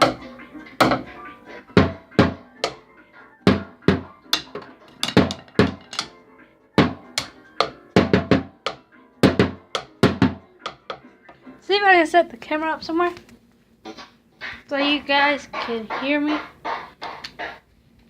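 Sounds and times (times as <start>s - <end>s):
sharp percussive hits: 3.5s - 6.1s.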